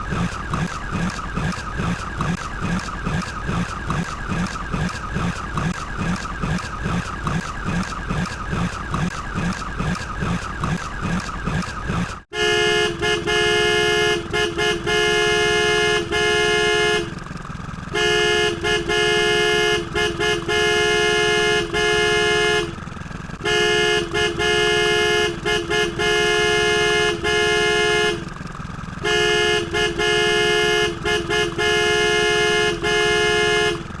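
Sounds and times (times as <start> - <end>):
fast pulsing sound: 0.0 - 12.2
multi-tone horn blasts: 0.0 - 34.0.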